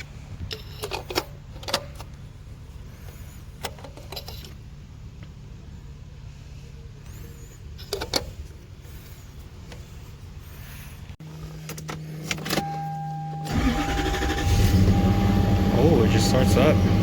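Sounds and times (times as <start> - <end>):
car engine cranking and starting: 11.3 - 17.0
steady high tone: 12.6 - 17.0.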